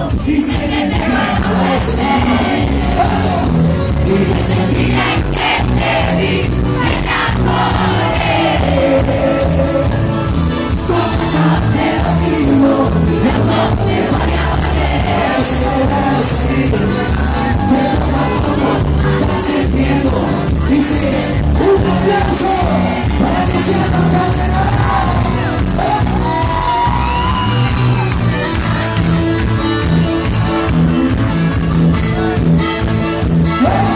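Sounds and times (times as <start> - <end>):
live band playing dance music: 0.0 - 33.9
crowd shouting: 4.6 - 9.1, 13.2 - 18.7, 22.0 - 28.4.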